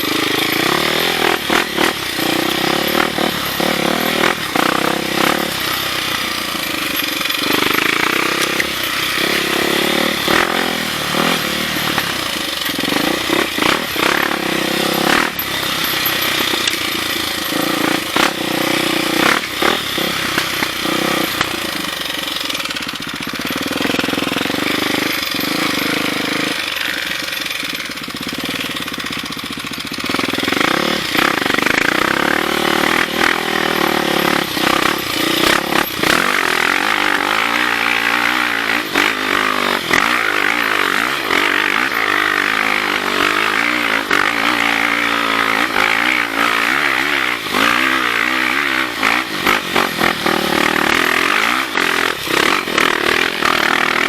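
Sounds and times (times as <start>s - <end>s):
dirt bike engine revving: 0.0s - 54.0s.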